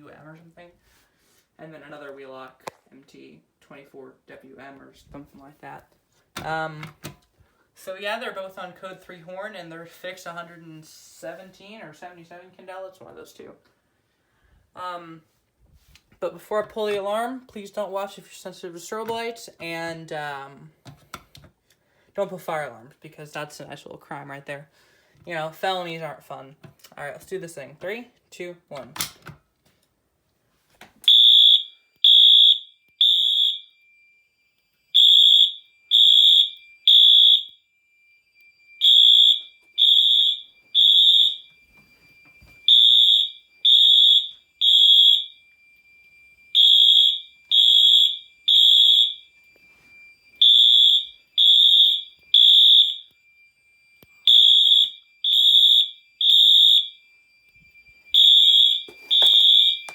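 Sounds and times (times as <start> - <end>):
faint steady high tone: 30.5 - 59.9
fire alarm horn beeps: 31.0 - 59.9.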